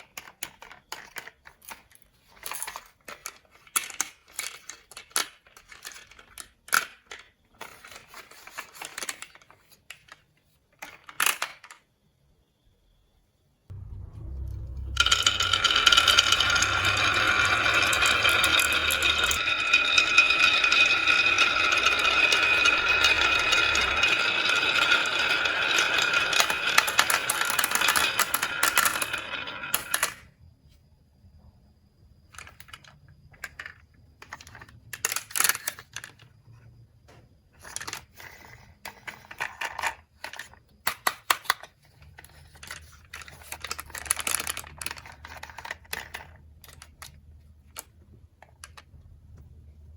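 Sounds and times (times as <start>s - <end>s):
marbles rolling down marble run: 13.7s - 30.3s, 42.4s - 48.9s
marbles clicking together: 14.9s - 30.1s.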